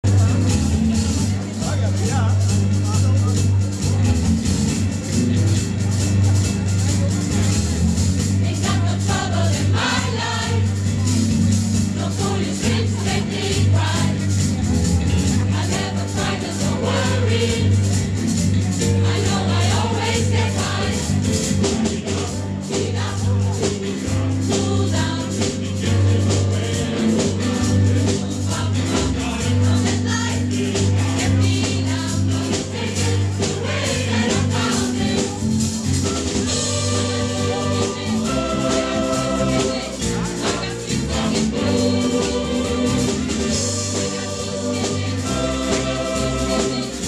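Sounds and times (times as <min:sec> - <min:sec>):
bass line: 0:00.0 - 0:47.0
shaker beat: 0:00.0 - 0:47.0
choir singing: 0:08.4 - 0:11.1, 0:11.7 - 0:14.5, 0:15.4 - 0:18.1, 0:18.8 - 0:35.5, 0:36.4 - 0:47.0.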